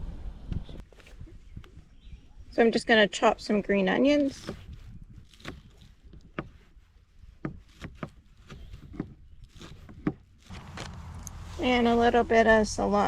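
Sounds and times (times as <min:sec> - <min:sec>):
low steady rumble: 0:10.5 - 0:13.0.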